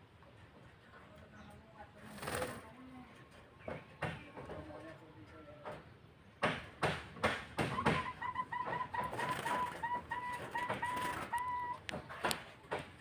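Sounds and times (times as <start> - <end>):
sharp knocks and rustles: 5.6 - 9.7, 10.4 - 13.0
dove calling: 7.6 - 12.8.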